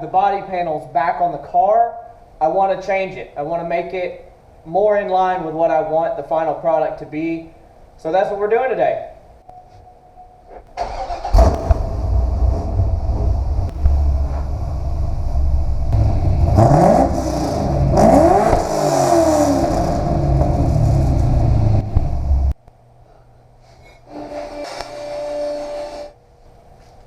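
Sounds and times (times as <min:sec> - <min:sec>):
car engine revving: 0:10.8 - 0:22.6.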